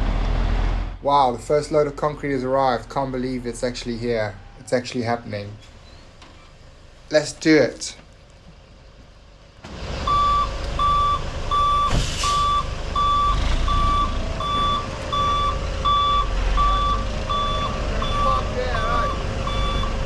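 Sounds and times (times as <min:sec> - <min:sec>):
low diesel engine rumble: 0:00.0 - 0:20.0
back-up alarm beeping: 0:10.1 - 0:20.0
brief hiss: 0:11.9 - 0:12.5.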